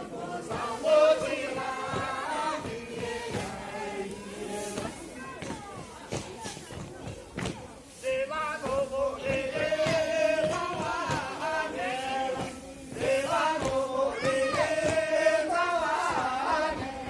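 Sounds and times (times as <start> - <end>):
men singing with sliding notes: 0.0 - 4.3, 8.0 - 17.0.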